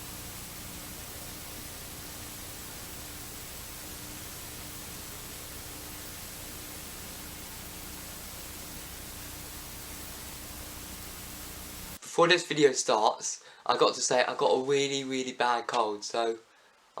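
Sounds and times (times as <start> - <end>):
static hiss: 0.0 - 12.0
faint constant hum: 0.0 - 17.0.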